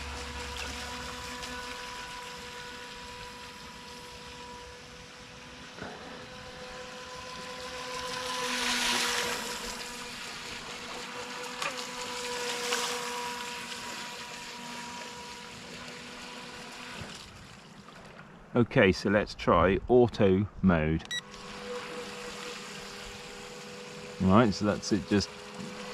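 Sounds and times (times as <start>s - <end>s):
electric motor whine: 0.0s - 17.9s, 21.0s - 25.9s
rush of water: 7.3s - 18.3s.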